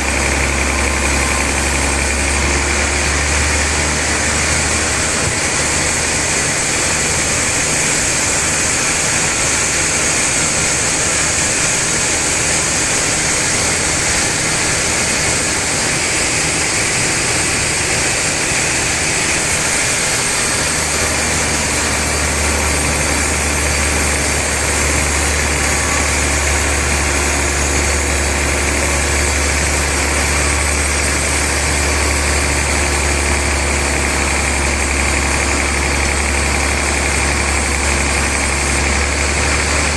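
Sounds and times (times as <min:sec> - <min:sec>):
deep hum: 0:00.0 - 0:07.2, 0:19.7 - 0:39.9
sawmill saw running: 0:00.0 - 0:39.9.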